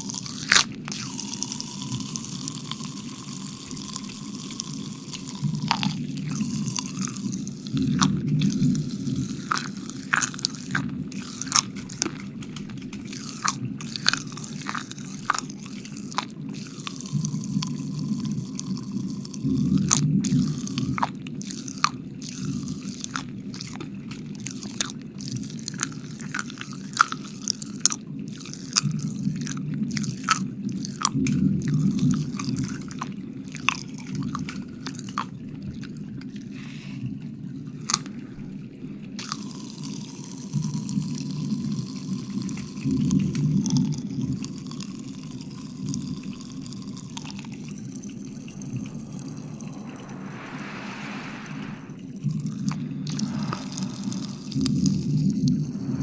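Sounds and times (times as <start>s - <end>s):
wet mouth sounds: 0.0s - 12.3s
steady low hum: 45.9s - 56.0s.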